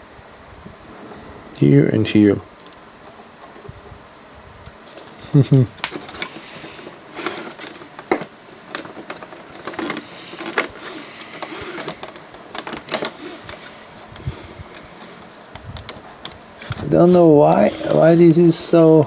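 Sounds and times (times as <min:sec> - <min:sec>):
plastic parts clicking and scraping: 0:05.8 - 0:18.9.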